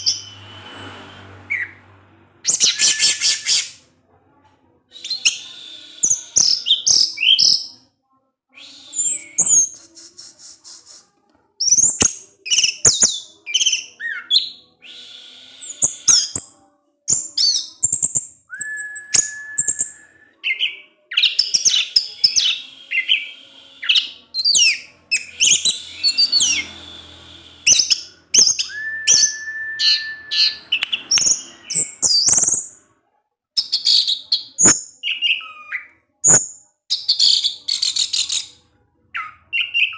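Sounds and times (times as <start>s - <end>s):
thrush singing: 8.6s - 32.8s
long low whistles: 25.2s - 30.8s.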